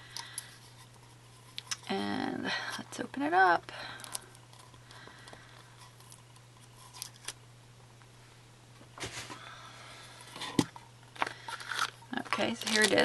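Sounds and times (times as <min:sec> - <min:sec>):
plastic package rustling: 0:11.1 - 0:13.0.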